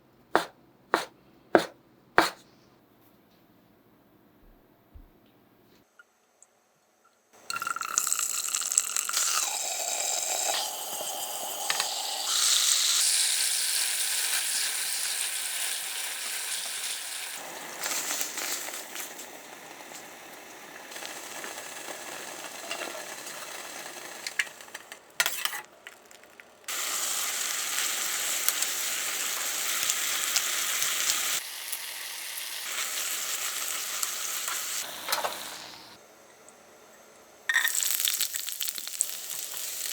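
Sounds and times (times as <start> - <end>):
food sizzling in a frying pan: 7.5 - 24.7, 26.0 - 35.9, 37.5 - 39.9.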